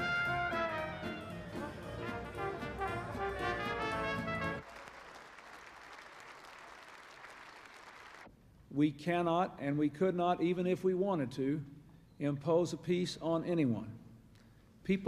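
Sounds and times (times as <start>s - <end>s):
brass band playing: 0.0s - 4.7s
crowd applause: 2.0s - 8.3s.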